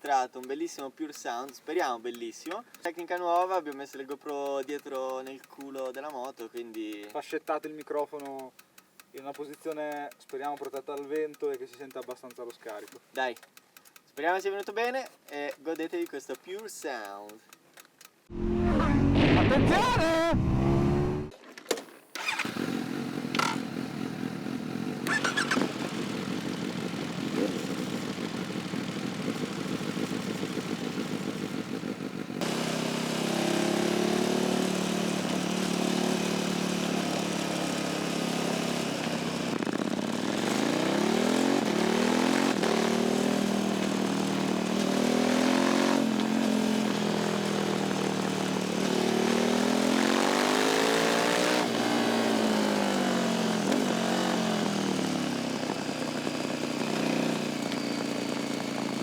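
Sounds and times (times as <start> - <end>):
motorcycle engine revving: 18.3 - 21.4, 22.2 - 59.0.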